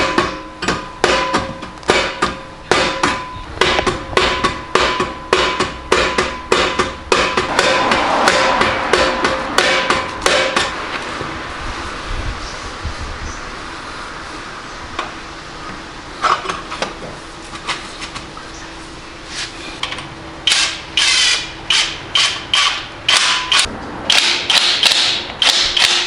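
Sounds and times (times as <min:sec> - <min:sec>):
rubber mallet striking metal exhaust: 0:00.0 - 0:11.5.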